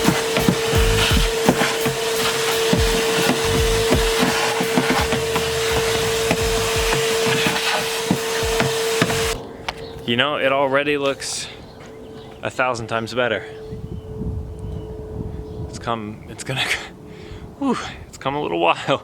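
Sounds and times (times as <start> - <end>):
debris knocking and rattling: 0.0 - 9.4
vacuum cleaner whine: 0.0 - 9.4.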